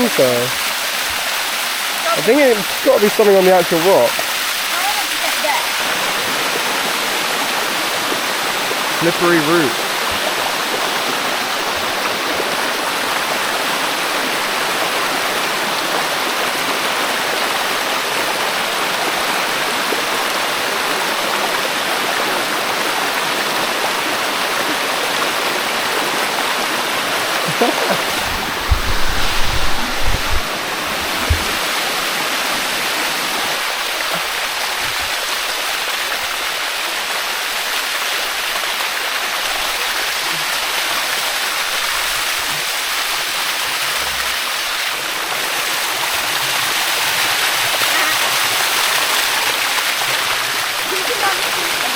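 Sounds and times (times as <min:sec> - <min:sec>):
waterfall rushing over rocks: 0:00.0 - 0:51.9
low bumps: 0:27.9 - 0:32.1.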